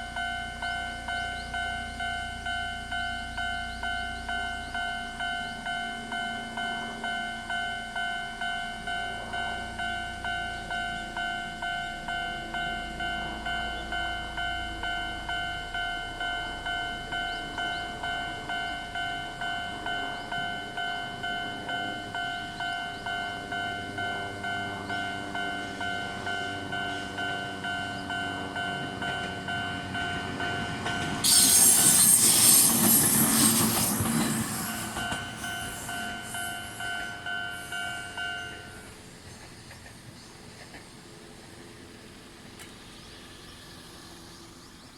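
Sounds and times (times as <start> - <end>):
electronic level crossing bell: 0.0 - 31.3, 35.0 - 39.0
train passing over crossing: 0.0 - 44.9.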